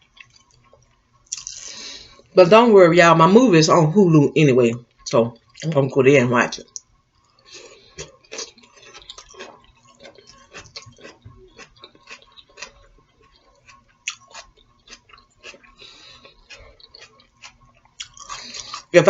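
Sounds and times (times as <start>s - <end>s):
person chewing food: 0.0s - 2.3s, 6.7s - 19.0s.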